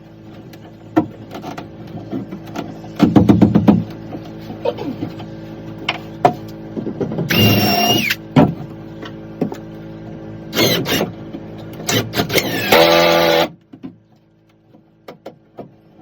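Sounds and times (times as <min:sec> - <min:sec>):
small power tool whining: 0:07.3 - 0:08.2, 0:10.5 - 0:11.2, 0:11.8 - 0:13.6.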